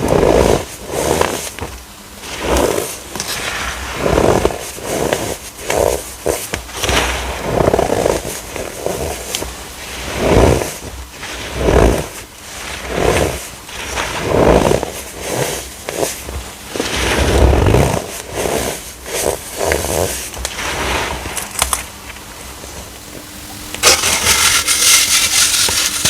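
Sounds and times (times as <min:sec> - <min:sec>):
baking soda blocks crunching: 0:22.7 - 0:26.0.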